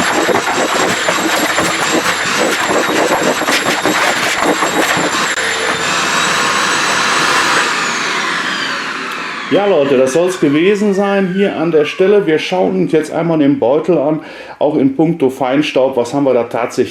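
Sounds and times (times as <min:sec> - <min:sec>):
vacuum cleaner motor whining: 0:00.0 - 0:12.3.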